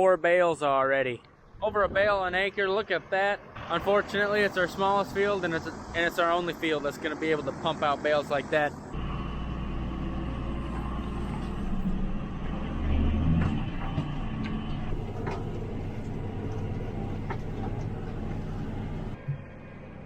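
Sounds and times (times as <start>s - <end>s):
vehicle engine running: 3.4s - 20.0s
sharp clicks and knocks: 13.3s - 19.4s.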